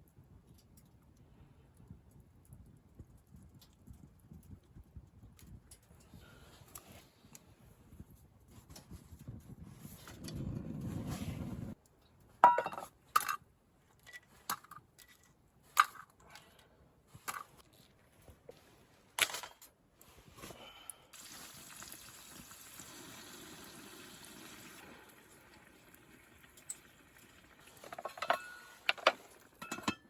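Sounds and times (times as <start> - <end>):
liquid being poured: 21.2 - 28.2
metal cookware clinks: 29.6 - 30.0.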